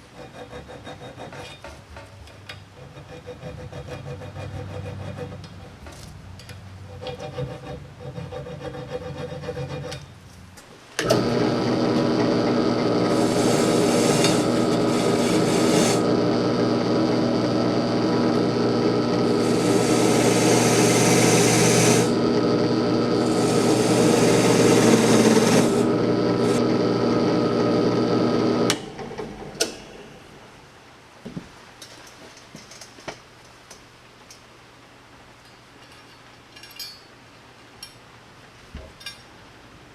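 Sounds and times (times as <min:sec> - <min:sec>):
power tool motor running: 0:11.0 - 0:30.2
tool cutting with harsh hissing: 0:11.0 - 0:30.6.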